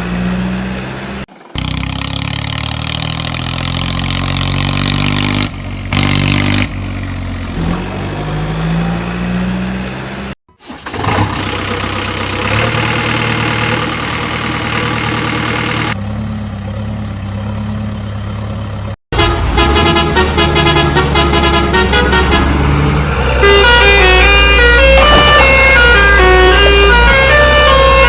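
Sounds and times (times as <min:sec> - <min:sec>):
truck engine running: 0:00.0 - 0:28.0
horn notes playing a tune: 0:19.1 - 0:22.7, 0:23.4 - 0:28.0.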